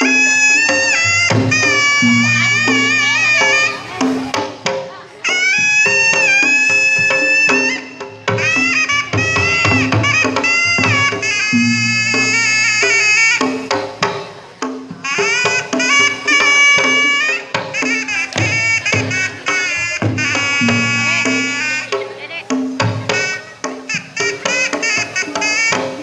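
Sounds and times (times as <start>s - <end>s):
low held tones: 0.0s - 6.0s
shrill reed horn melody: 0.0s - 13.5s
drum strokes: 0.0s - 26.0s.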